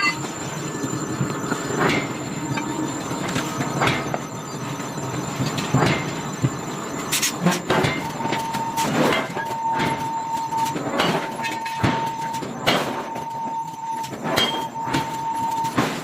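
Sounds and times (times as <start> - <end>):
high-pitched machine whine: 0.0 - 16.0
forging machine metallic clanks: 14.2 - 15.0.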